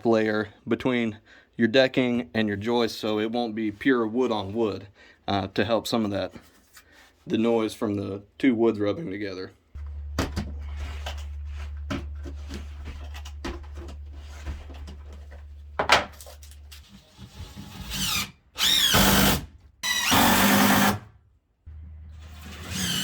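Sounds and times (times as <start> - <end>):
low steady hum: 9.7 - 17.1, 21.6 - 22.9
drill driving screws: 17.4 - 21.1, 22.4 - 23.0.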